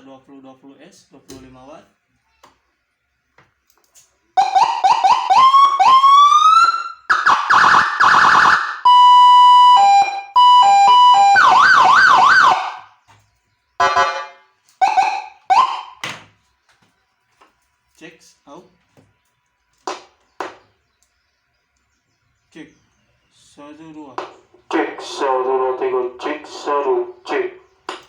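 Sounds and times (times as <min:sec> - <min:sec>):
electronic siren cycling tones: 0:04.4 - 0:13.0, 0:13.8 - 0:16.0.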